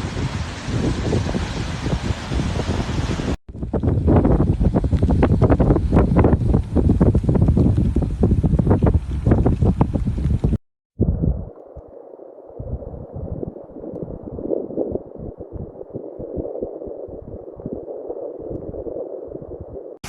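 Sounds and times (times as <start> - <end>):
wind buffeting microphone: 0.0 - 11.9, 12.5 - 20.0
muffled rushing noise: 11.0 - 20.0.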